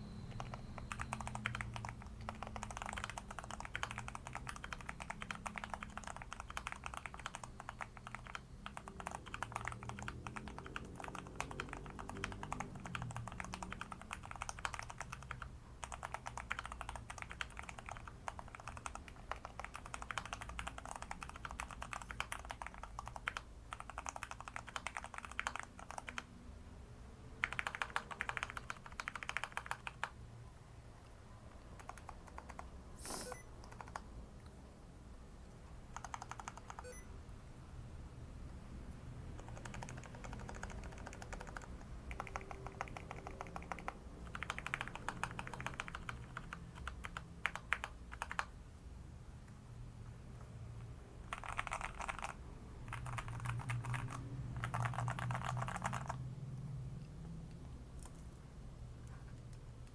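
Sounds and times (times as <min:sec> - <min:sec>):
typing on mechanical keyboard: 0:00.3 - 0:26.3, 0:27.4 - 0:30.2, 0:31.8 - 0:34.1, 0:35.9 - 0:37.0, 0:39.3 - 0:48.5, 0:51.2 - 0:56.3, 0:58.0 - 0:58.3.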